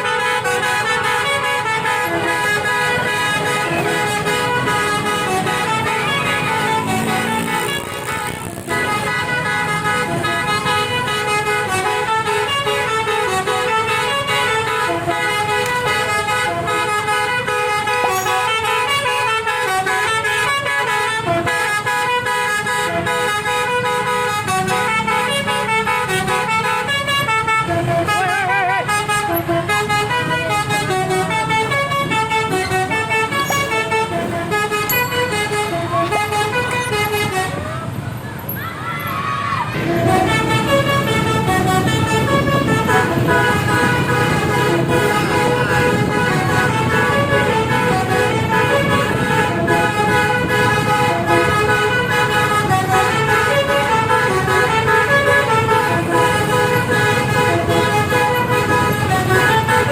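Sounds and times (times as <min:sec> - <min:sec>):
bus musical air horn tune: 0:00.0 - 0:38.2, 0:39.8 - 0:59.9
low engine rumble: 0:27.9 - 0:38.9.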